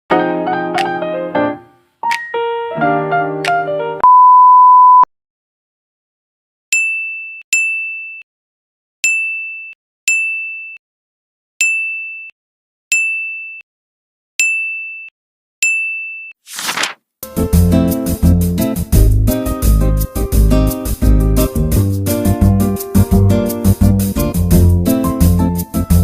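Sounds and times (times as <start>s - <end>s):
music: 0.1s - 4.0s, 17.2s - 26.0s.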